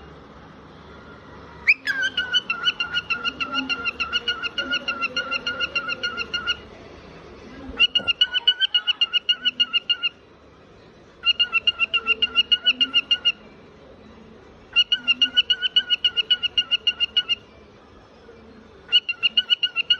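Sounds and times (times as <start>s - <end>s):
cockatiel chirping: 1.7s - 6.6s, 7.8s - 10.1s, 11.2s - 13.4s, 14.7s - 17.4s, 18.9s - 19.9s.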